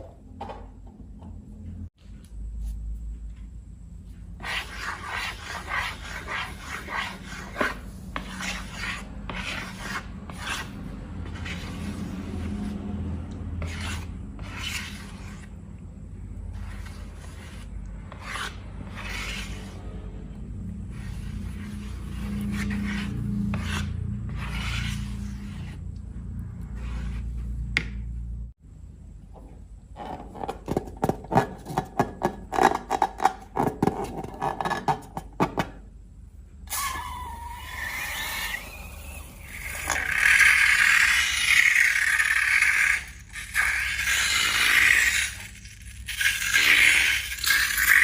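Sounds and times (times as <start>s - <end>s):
slime scraping and squishing: 39.5s - 48.0s.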